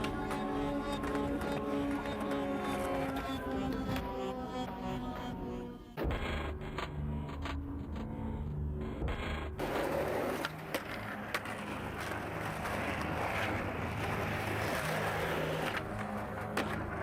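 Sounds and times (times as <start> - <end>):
skateboard wheels rolling on pavement: 0.0 - 4.0, 9.6 - 17.0
skateboard clacks: 0.0 - 4.1, 9.1 - 17.0.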